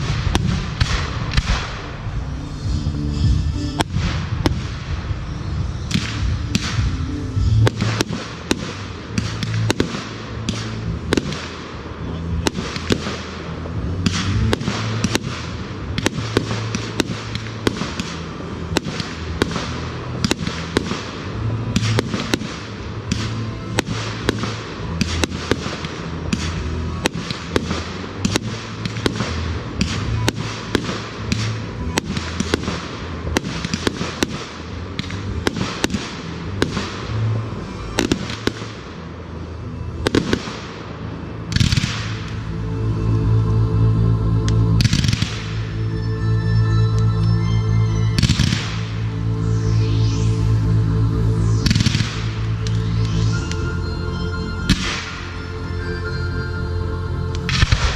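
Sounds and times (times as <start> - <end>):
fireworks bangs: 0.0 - 38.9, 40.0 - 42.4
music: 0.0 - 57.9.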